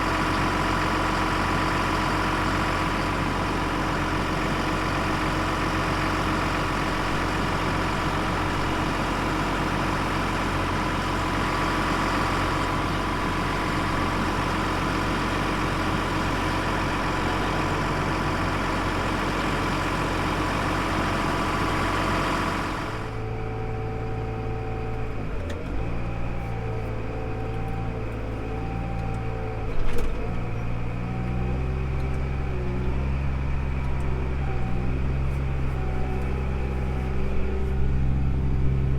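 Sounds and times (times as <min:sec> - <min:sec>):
low engine idle: 0:00.0 - 0:29.8, 0:30.5 - 0:38.9
tractor engine whining: 0:00.0 - 0:38.9.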